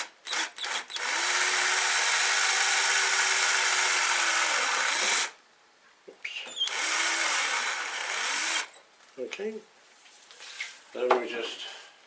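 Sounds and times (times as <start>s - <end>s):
electric drill boring into timber: 0.0s - 5.4s, 6.6s - 8.8s.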